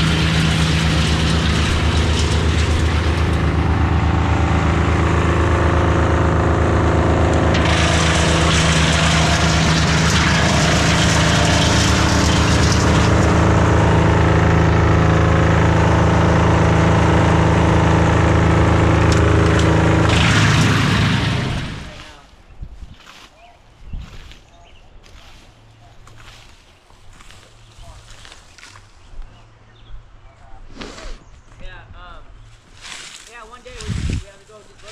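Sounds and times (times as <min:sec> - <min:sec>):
engine running steadily: 0:00.0 - 0:22.2.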